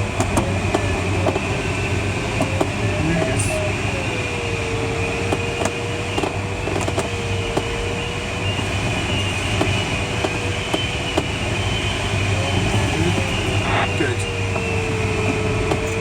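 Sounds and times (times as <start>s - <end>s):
airflow rushing in cockpit: 0.0s - 16.0s
variometer electronic tone: 10.6s - 15.4s.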